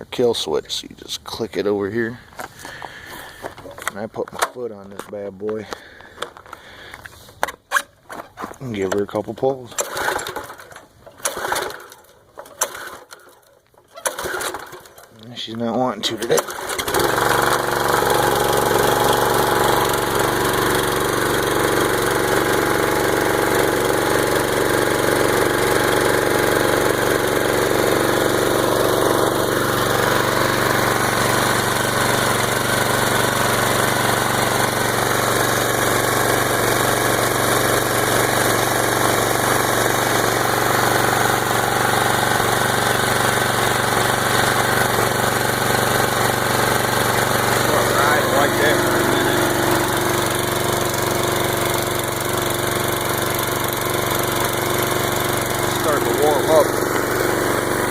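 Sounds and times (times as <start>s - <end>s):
pressure washer engine running: 9.7s - 57.9s.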